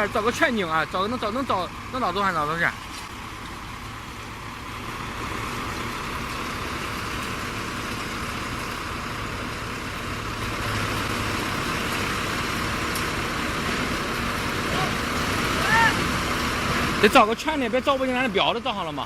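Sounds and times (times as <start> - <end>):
concrete mixer engine running: 0.0 - 19.0.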